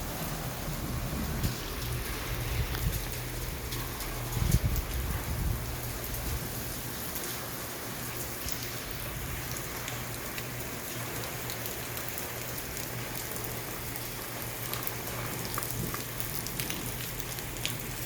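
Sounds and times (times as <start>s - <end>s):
heavy rain: 0.0s - 18.0s
raindrops ticking on surfaces: 0.0s - 18.0s.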